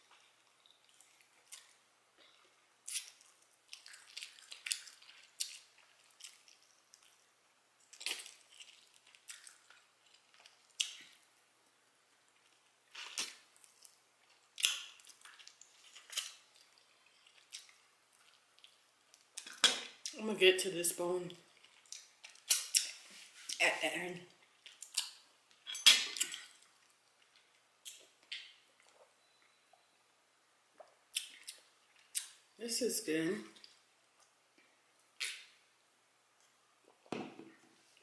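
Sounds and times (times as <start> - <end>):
chewing and wet lip-smacking: 0.0 - 11.4, 12.0 - 20.2, 21.3 - 23.6, 24.3 - 29.2, 30.8 - 32.4.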